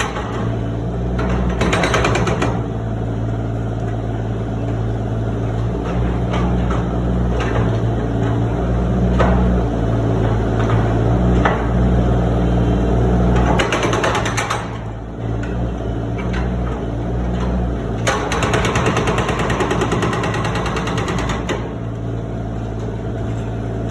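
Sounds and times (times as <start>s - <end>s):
diesel machinery drone: 2.5s - 23.9s.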